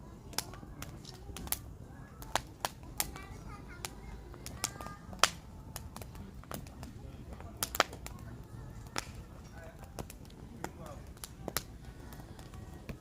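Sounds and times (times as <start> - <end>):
firewood crackling and popping: 0.0 - 13.0
low rumble of fire: 0.0 - 13.0.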